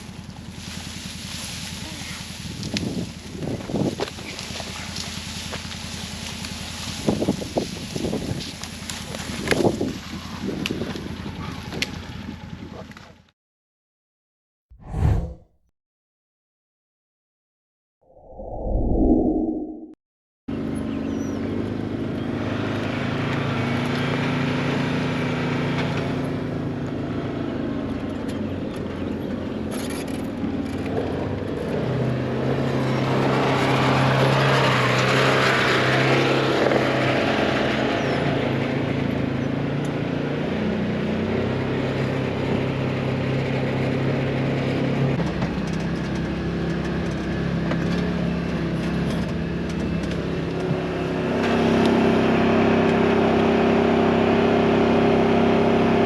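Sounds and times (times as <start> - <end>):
rush of noise: 14.8 - 15.6, 18.1 - 20.0.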